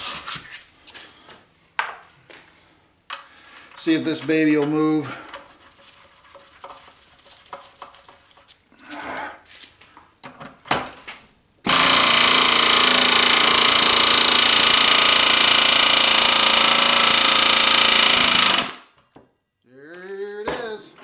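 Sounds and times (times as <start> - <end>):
power tool running: 11.7 - 18.8.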